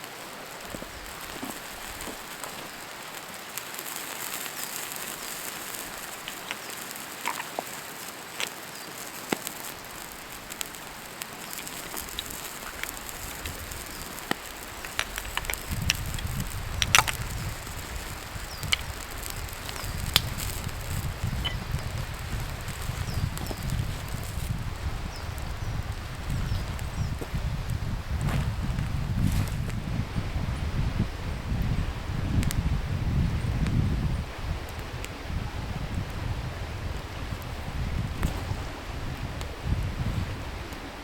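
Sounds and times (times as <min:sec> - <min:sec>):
campfire crackling: 0:00.0 - 0:29.9, 0:31.4 - 0:41.0
steady hiss: 0:00.0 - 0:41.0.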